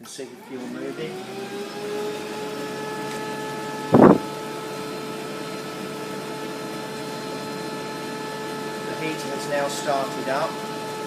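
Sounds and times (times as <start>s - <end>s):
heater blower fan humming: 0.0s - 11.0s
short loud thump: 4.0s - 4.2s.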